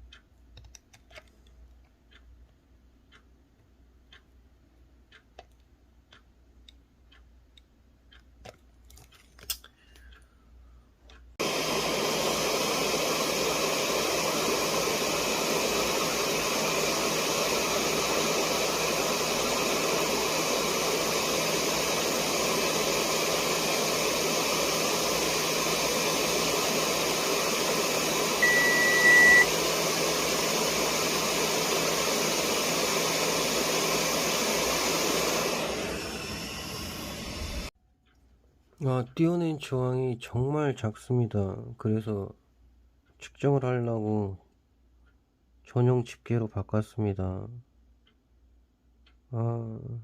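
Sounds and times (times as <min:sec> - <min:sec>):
hot air station blowing: 0:11.4 - 0:37.8
beep: 0:28.4 - 0:29.5.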